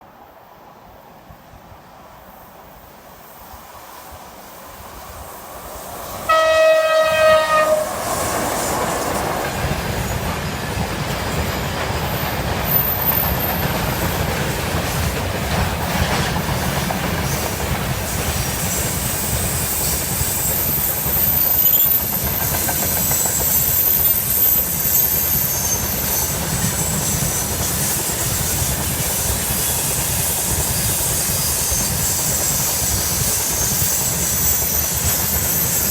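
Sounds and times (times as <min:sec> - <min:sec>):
train horn blast: 0:06.2 - 0:08.8.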